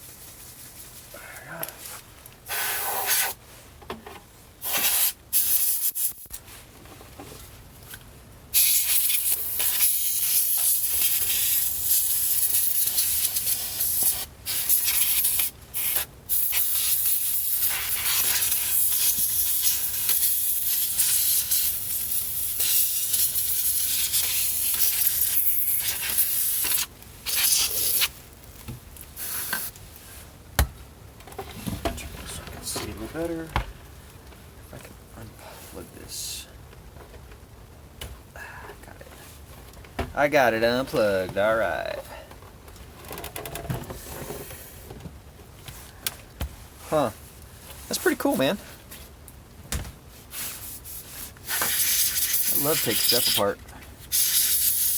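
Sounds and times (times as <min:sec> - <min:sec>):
compressed air hissing: 0:02.5 - 0:03.4, 0:04.6 - 0:06.2, 0:08.6 - 0:28.2, 0:29.2 - 0:29.8, 0:50.3 - 0:54.9.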